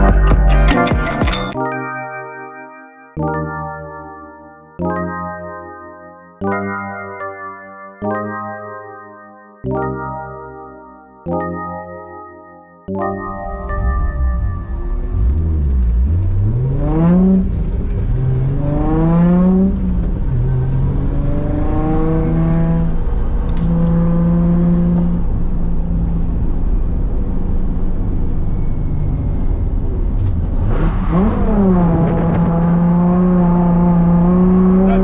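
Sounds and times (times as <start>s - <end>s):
car engine accelerating hard: 13.7s - 35.0s.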